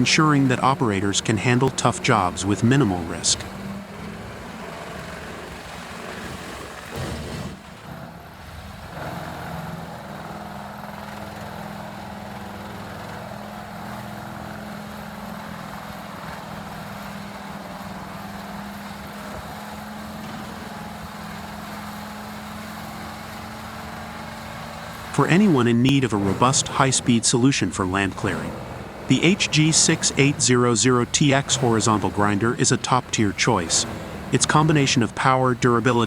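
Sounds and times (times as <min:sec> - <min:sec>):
grinder engine running: 0:00.0 - 0:36.0.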